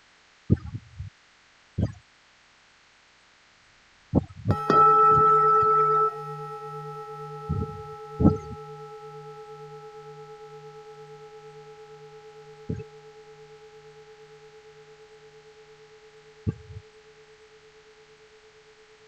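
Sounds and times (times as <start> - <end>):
temple bell ringing: 4.5 - 18.8
low pulsing hum: 4.5 - 19.0.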